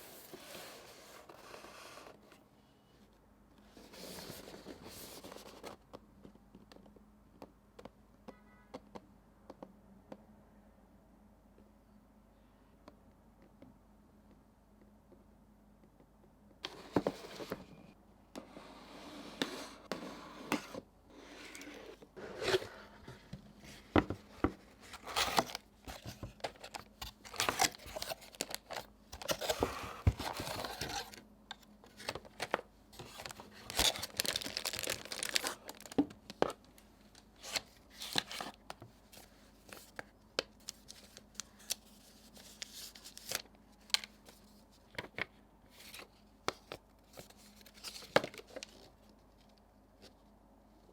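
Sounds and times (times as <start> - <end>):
paper and plastic tearing: 33.0 - 36.0.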